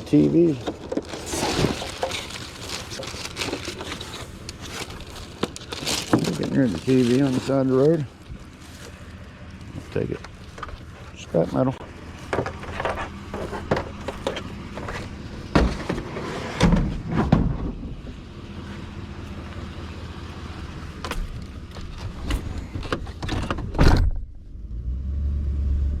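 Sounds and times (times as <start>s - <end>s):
truck engine idling: 0.0s - 16.3s, 17.6s - 23.2s.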